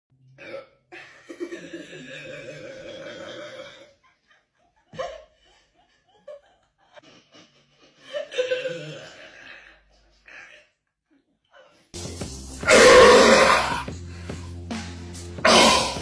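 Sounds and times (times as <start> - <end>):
long human burp: 0.3 - 0.9, 1.9 - 4.0, 15.5 - 16.0.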